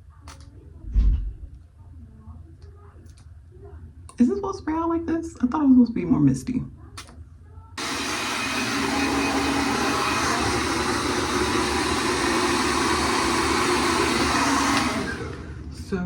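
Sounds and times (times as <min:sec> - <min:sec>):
hair dryer blowing: 0:07.8 - 0:15.7.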